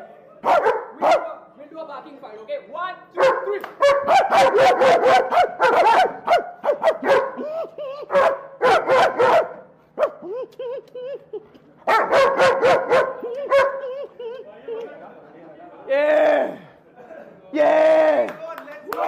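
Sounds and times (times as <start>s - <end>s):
dog barking: 0.4s - 1.4s, 3.2s - 7.4s, 8.1s - 10.2s, 11.9s - 13.9s
man imitating dog barks: 0.4s - 1.4s, 3.2s - 10.6s, 11.9s - 14.1s.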